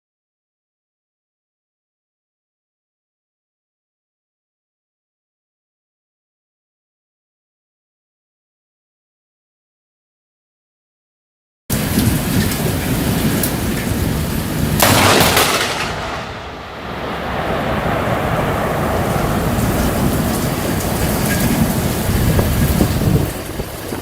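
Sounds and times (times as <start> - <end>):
heavy rain: 11.7 - 24.0
thunder rumble: 11.7 - 24.0
loud thunder crack: 14.7 - 24.0.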